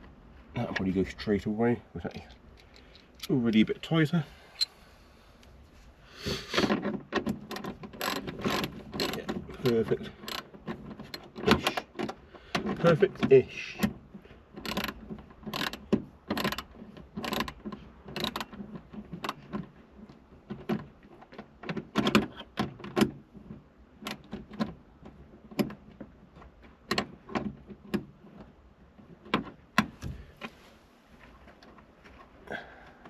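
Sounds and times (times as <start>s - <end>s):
wrench metal clicks: 7.5s - 9.3s, 14.6s - 18.6s.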